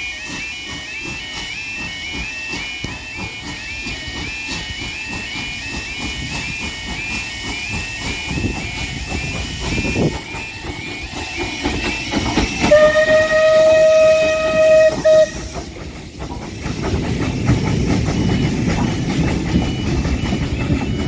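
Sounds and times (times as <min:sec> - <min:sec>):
steam locomotive whistle: 0:00.0 - 0:15.9
train wheels clattering over rails: 0:00.0 - 0:21.0.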